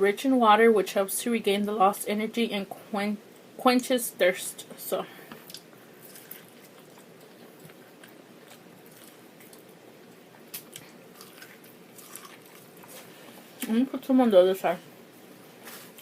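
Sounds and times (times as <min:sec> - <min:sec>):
chewing corn on the cob: 0:05.5 - 0:13.1.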